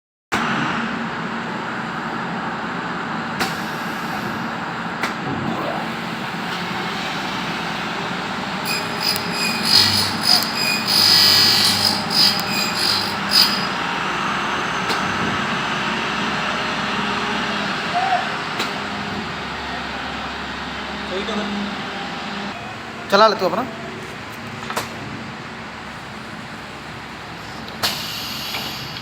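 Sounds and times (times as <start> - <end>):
high machine whine: 3.6 - 22.8
machine running: 5.3 - 22.5
sharp machine clicks: 6.4 - 13.9.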